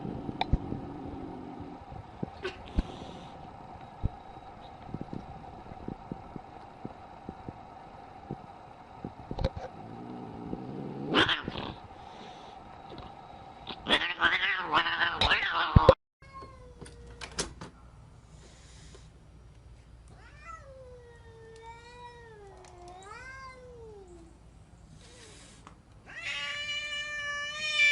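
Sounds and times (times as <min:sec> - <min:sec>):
low hum: 0:00.0 - 0:14.0
cat yowling: 0:13.8 - 0:15.9.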